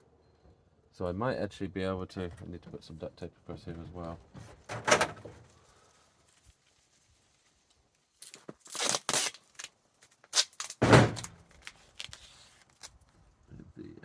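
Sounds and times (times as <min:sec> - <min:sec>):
duct tape ripping: 0:08.1 - 0:13.1
thud: 0:10.8 - 0:11.4.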